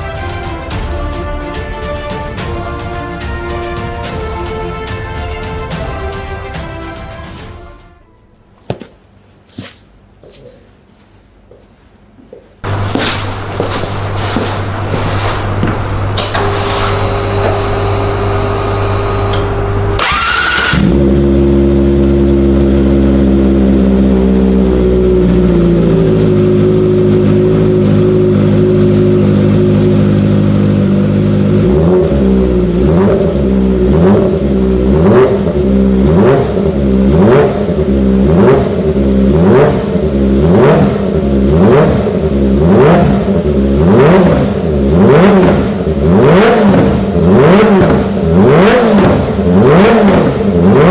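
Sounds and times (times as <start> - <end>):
motorcycle engine revving: 12.6 - 50.9
motorcycle engine idling: 20.8 - 43.8.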